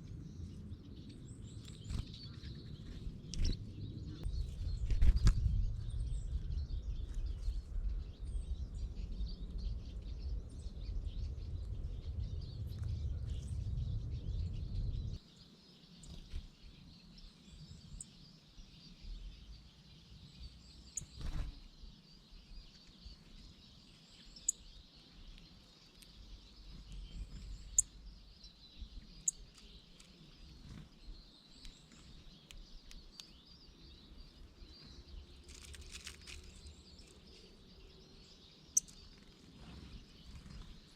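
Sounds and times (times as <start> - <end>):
small birds chirping: 0.0 - 40.9
low rumble: 2.7 - 15.2.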